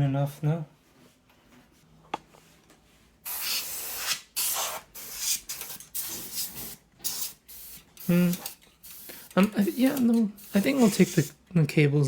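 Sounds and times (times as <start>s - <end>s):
compressed air spraying: 3.3s - 11.3s.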